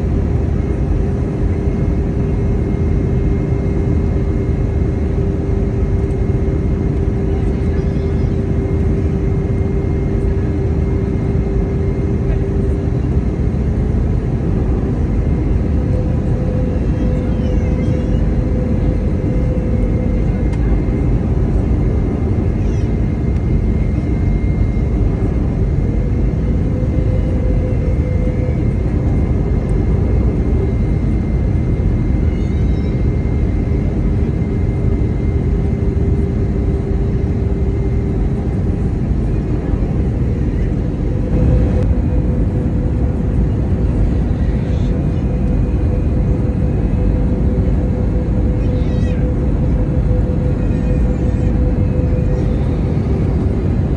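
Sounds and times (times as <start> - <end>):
aircraft cabin engine rush: 0.0 - 53.9
thin engine whine: 32.9 - 53.9.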